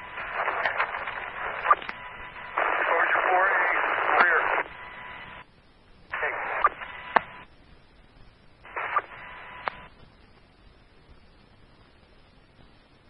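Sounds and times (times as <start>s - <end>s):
radio voice transmissions: 0.0s - 5.4s, 6.1s - 7.4s, 8.7s - 9.8s
faint static hiss: 0.0s - 13.0s
radio click: 0.2s - 4.8s, 6.1s - 7.5s, 8.7s - 10.1s.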